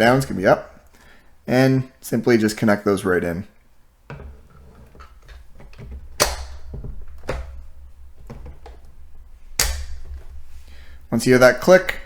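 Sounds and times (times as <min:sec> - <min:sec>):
plastic module snapping into place: 0:06.2 - 0:07.6, 0:09.6 - 0:10.2.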